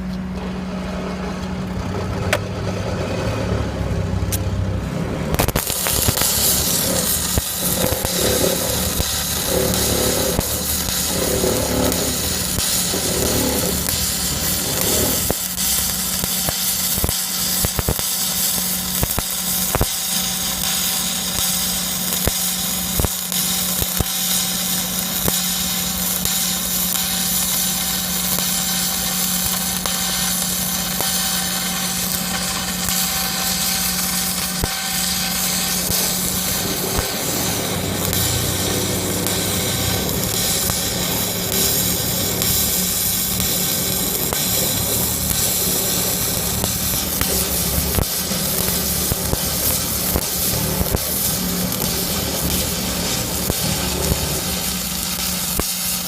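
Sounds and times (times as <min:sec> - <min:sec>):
welding machine hum: 0:00.0 - 0:56.0
sharp popping: 0:05.3 - 0:18.1
welding arc crackling hiss: 0:05.3 - 0:56.0.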